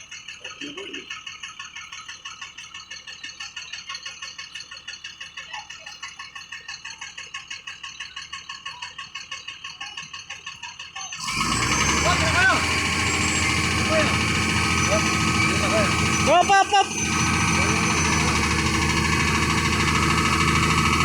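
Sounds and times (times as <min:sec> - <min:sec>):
heavy machine engine: 0:11.2 - 0:21.0
high-pitched pulsing: 0:11.2 - 0:21.0.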